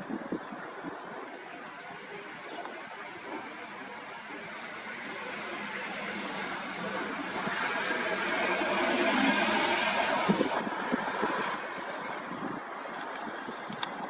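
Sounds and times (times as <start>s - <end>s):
road vehicle passing by: 2.0s - 12.3s.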